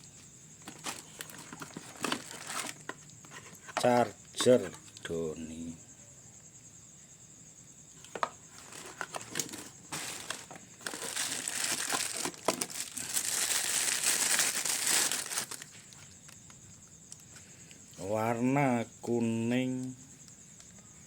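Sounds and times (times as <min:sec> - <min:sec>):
packaging rustling: 0:00.6 - 0:03.6, 0:08.1 - 0:16.1
packaging crackling: 0:00.7 - 0:02.9, 0:08.6 - 0:16.1.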